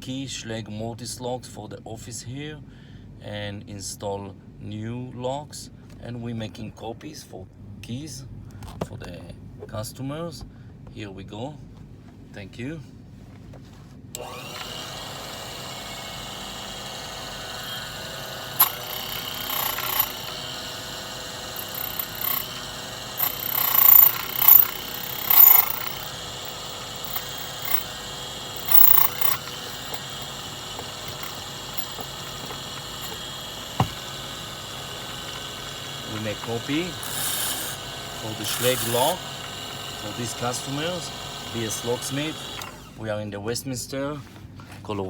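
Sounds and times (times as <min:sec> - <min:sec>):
cutter cutting a key: 0:14.2 - 0:42.7
key duplicating machine motor: 0:14.2 - 0:43.0.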